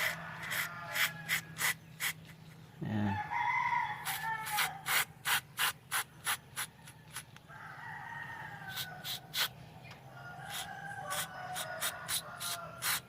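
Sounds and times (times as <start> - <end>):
rooster crowing: 0.0 - 1.5, 3.1 - 4.9, 6.8 - 9.3, 10.1 - 13.0
rasping scraping strokes: 0.0 - 2.4, 10.5 - 13.0.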